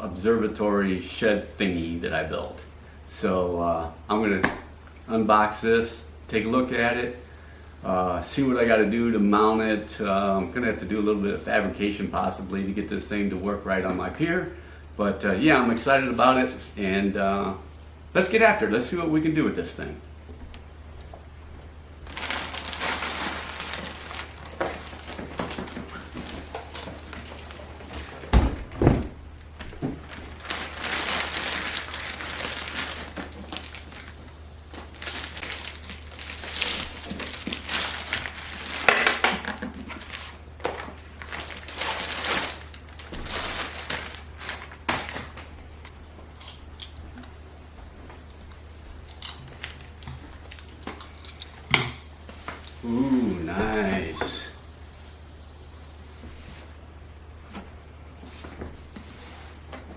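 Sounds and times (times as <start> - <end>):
cardboard packaging crinkling: 22.0 - 28.3, 29.4 - 46.0, 49.1 - 51.5.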